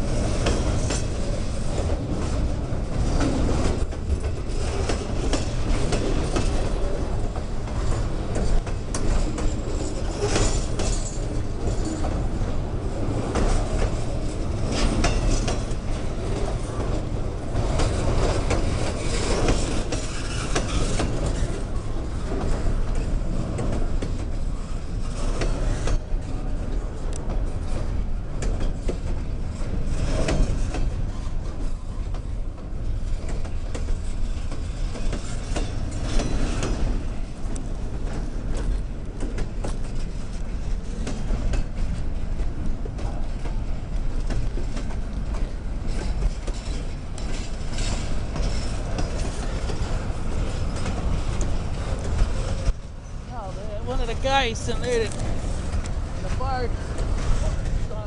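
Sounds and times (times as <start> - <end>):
train rumbling past: 0.0 - 58.0
wheels clicking over rail joints: 0.0 - 58.0.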